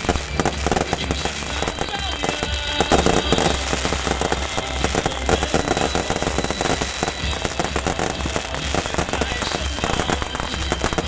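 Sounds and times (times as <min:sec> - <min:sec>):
fireworks rapid bangs and crackles: 0:00.0 - 0:11.0.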